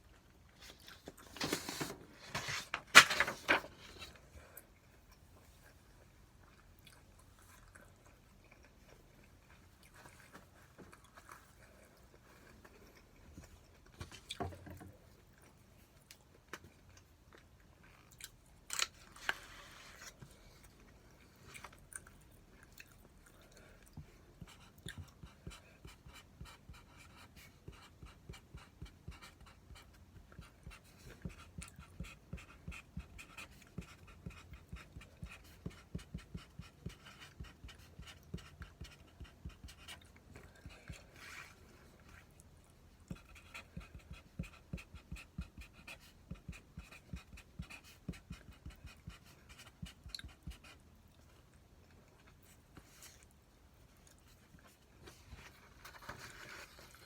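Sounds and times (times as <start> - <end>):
person chewing food wetly: 21.0 - 25.2.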